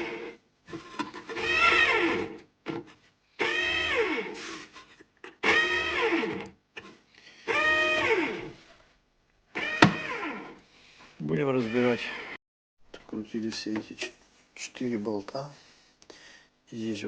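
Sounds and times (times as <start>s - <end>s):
bread maker motor buzzing: 1.3s - 2.4s, 5.4s - 6.5s, 7.5s - 8.5s, 9.6s - 10.6s.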